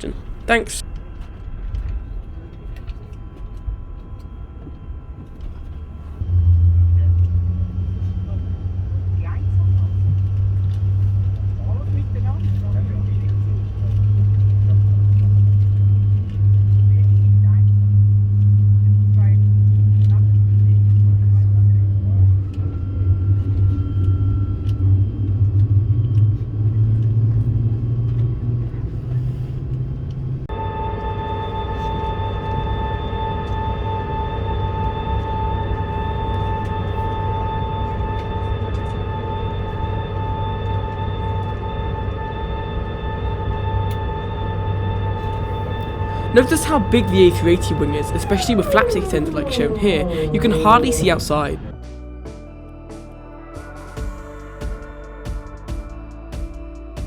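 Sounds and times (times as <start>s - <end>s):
music of long held tones: 0.9s - 57.0s
loud low drone: 6.2s - 51.8s
airliner cabin rumble: 21.8s - 51.8s.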